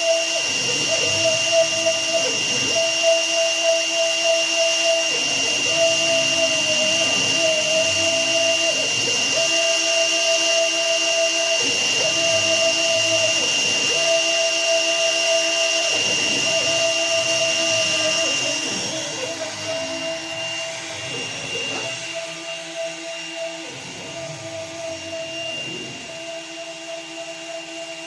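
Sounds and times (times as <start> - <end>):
stepper motors humming: 0.0 - 4.0, 4.8 - 28.0
spindle high whine: 0.0 - 28.0.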